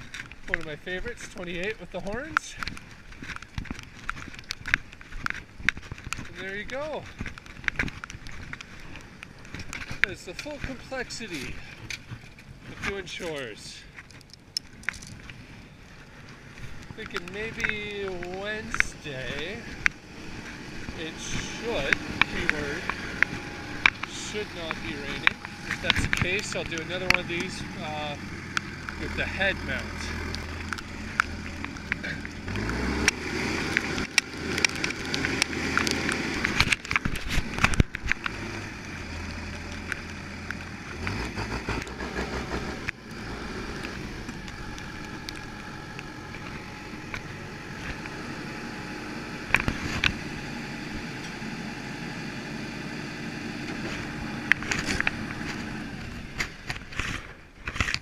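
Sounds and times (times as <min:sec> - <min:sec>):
tractor engine running: 0:00.0 - 0:58.0.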